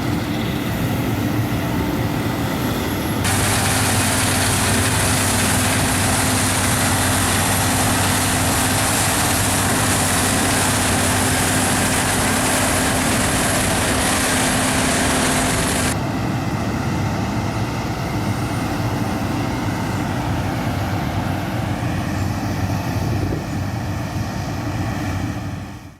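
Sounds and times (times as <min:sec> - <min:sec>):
combine harvester engine drone: 0:00.0 - 0:25.9.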